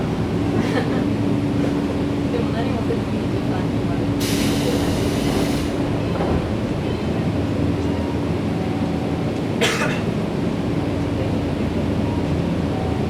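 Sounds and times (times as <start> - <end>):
electric train equipment hum: 0.0 - 13.0
person coughing: 9.6 - 10.1.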